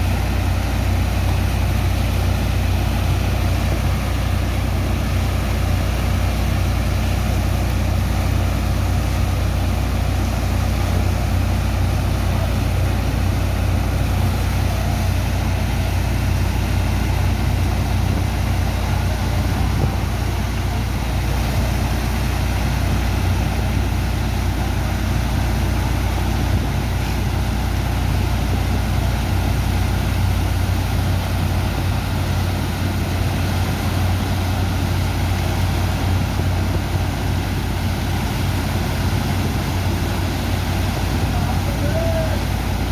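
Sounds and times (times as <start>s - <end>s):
engine and pump humming: 0.0s - 42.9s
rushing noise: 0.0s - 42.9s.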